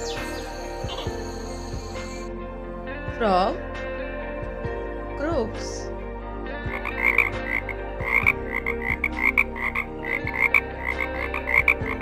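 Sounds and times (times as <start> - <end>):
frog croaking: 0.0 - 2.3, 6.7 - 12.0.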